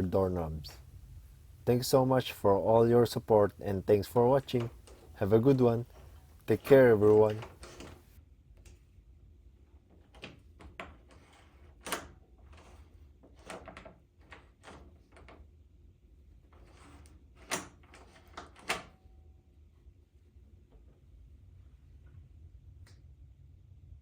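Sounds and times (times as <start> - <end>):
door knob and latch clicking: 3.8 - 8.1.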